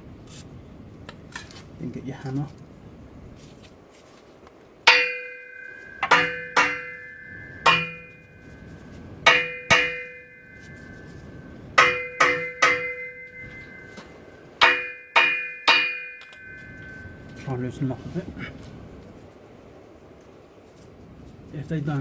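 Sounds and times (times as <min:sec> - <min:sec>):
hammer striking metal bolts: 0:04.9 - 0:08.6, 0:09.3 - 0:17.5.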